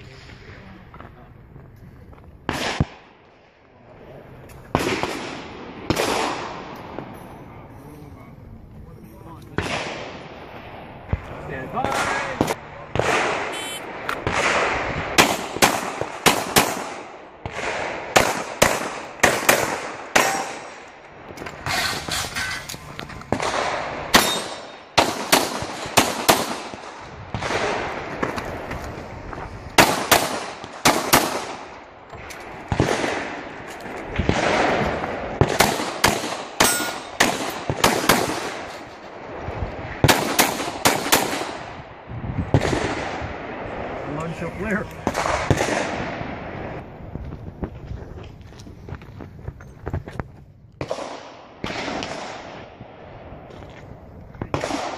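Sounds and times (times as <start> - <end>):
pistol shots: 2.5 - 3.1, 4.7 - 7.0, 11.8 - 20.9, 23.3 - 28.3, 29.8 - 31.8, 34.2 - 39.0, 40.0 - 41.8, 44.7 - 46.4, 50.8 - 52.8, 54.4 - 54.9.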